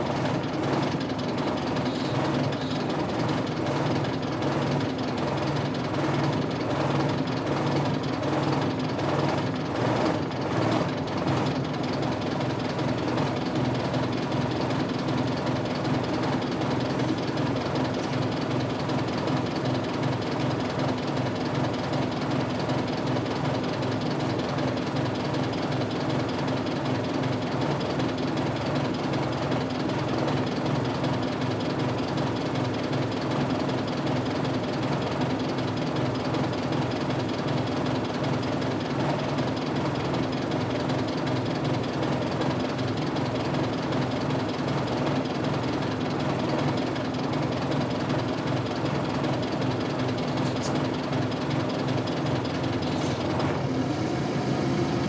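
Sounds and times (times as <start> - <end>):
diesel bus engine idling unevenly: 0.0 - 55.0.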